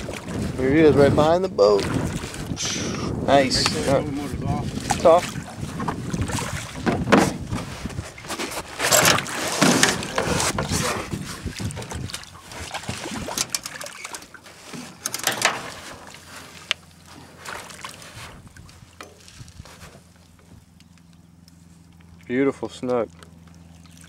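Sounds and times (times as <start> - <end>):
fish thrashing and splashing water: 0.0 - 0.6, 1.7 - 2.9, 4.3 - 20.4, 23.4 - 24.0.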